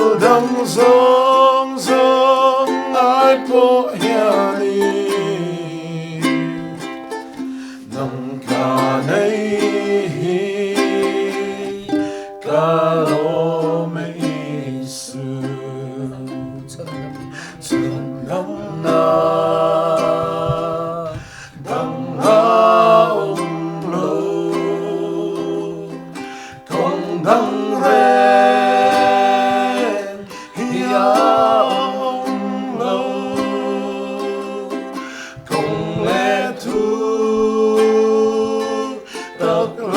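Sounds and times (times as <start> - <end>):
person singing with vibrato: 0.0 - 39.9
strummed acoustic string instrument: 0.0 - 39.9.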